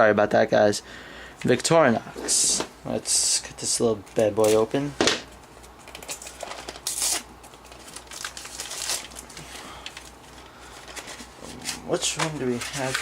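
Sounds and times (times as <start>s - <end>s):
packaging rustling and crackling: 4.2s - 13.0s
packaging ripping: 5.8s - 10.2s, 10.8s - 13.0s.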